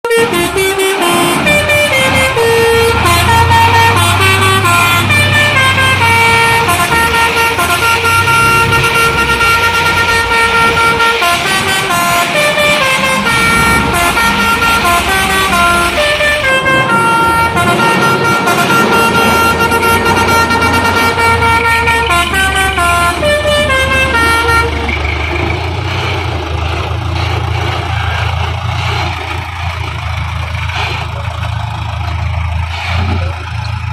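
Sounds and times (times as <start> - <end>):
musical truck horn playing a tune: 0.0 - 25.7
truck engine rumbling: 0.0 - 33.9.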